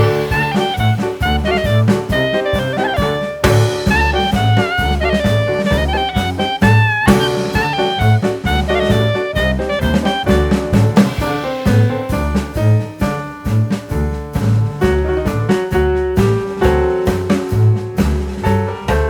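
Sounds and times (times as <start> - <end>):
saxophone melody: 0.0 - 12.3
bass line: 0.0 - 19.0
drum kit: 0.0 - 19.0.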